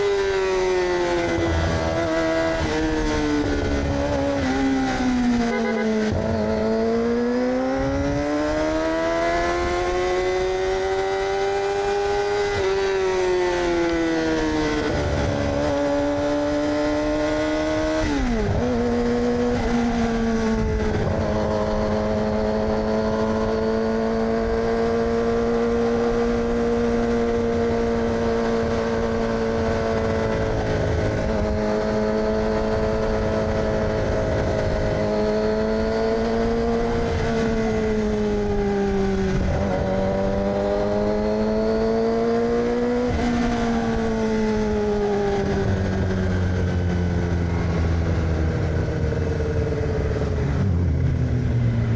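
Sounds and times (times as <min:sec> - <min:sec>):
wind noise: 0:00.0 - 0:51.9
motorcycle engine running: 0:14.6 - 0:51.9.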